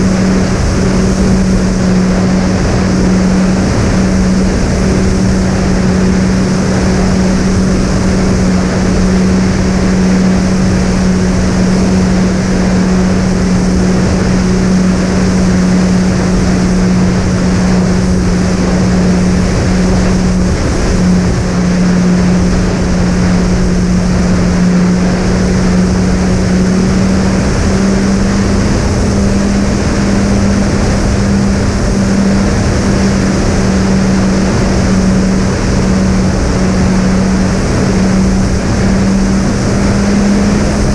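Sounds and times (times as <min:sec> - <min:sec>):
model plane motors humming: 0:00.0 - 0:40.9
wind rush: 0:00.0 - 0:40.9.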